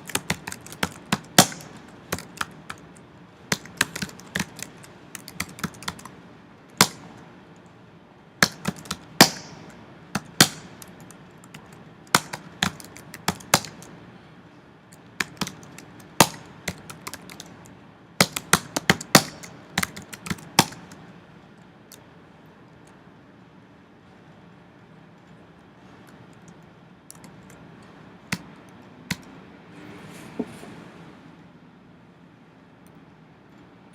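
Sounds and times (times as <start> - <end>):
computer keyboard clicks: 0.0 - 7.0, 8.4 - 9.2, 10.2 - 13.9, 14.9 - 21.0, 26.0 - 27.6, 29.1 - 29.3.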